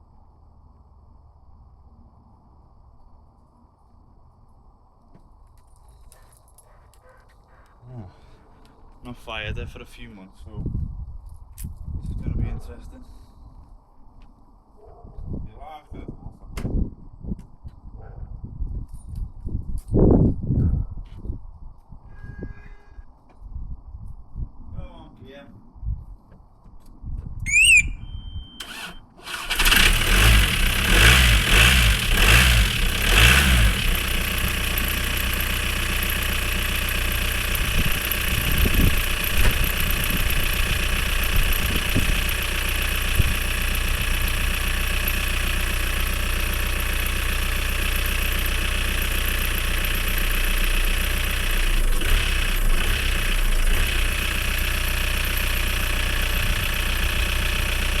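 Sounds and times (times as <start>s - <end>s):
car engine cranking: 28.6s - 58.0s
car engine idling: 28.7s - 58.0s.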